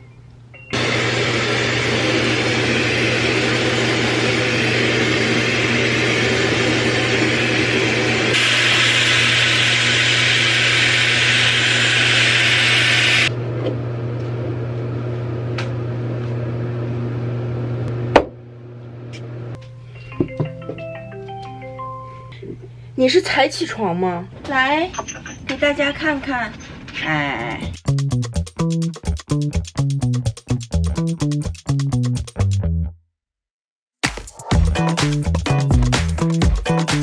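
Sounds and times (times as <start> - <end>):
hair dryer blowing: 0.8 - 13.3.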